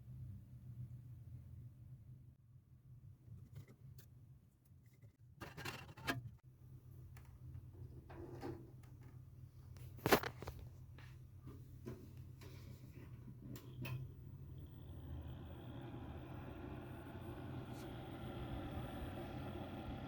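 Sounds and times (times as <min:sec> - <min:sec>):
steady low hum: 0:06.4 - 0:20.0.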